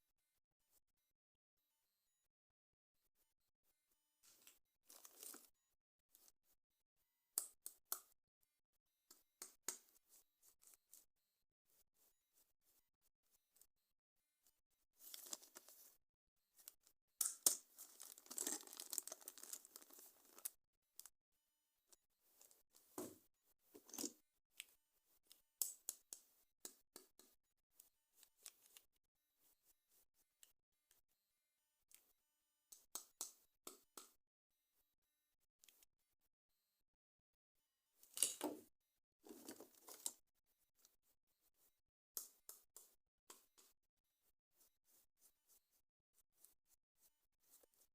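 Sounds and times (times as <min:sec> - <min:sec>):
packaging rustling: 0:04.9 - 0:05.5, 0:15.1 - 0:15.8, 0:17.8 - 0:20.5, 0:39.3 - 0:40.1.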